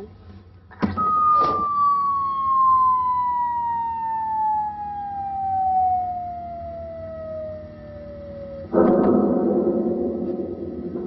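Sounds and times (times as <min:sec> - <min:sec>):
falling whistle sound effect: 0:01.0 - 0:08.7.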